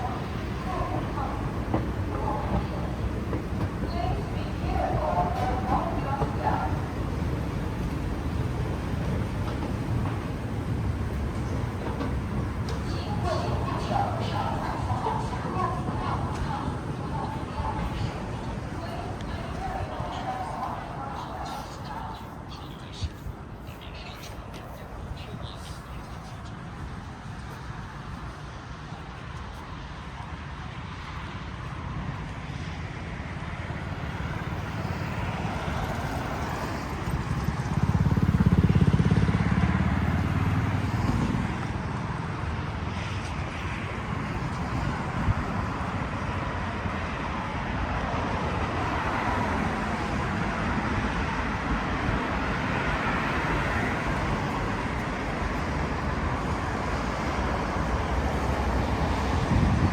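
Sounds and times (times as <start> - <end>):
road traffic noise: 0.0 - 59.9
vehicle passing close by: 34.7 - 43.0.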